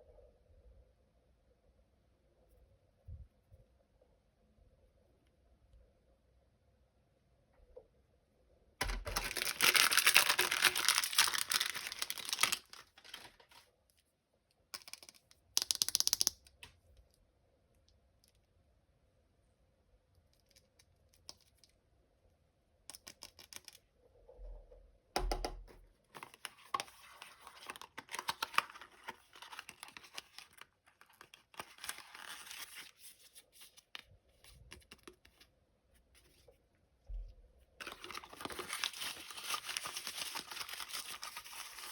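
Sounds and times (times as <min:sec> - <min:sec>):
packaging tearing: 0:08.8 - 0:13.6, 0:26.2 - 0:33.0, 0:37.8 - 0:41.9
wrapper crinkling and rustling: 0:08.8 - 0:13.7, 0:26.2 - 0:33.7, 0:37.8 - 0:41.9.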